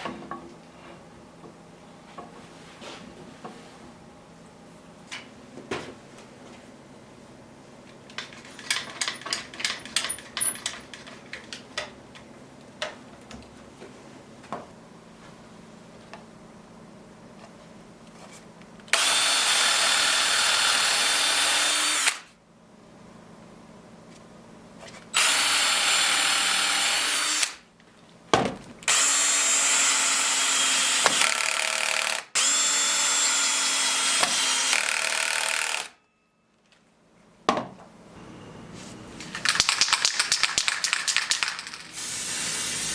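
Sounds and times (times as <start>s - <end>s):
power tool running on wood: 19.0s - 22.2s.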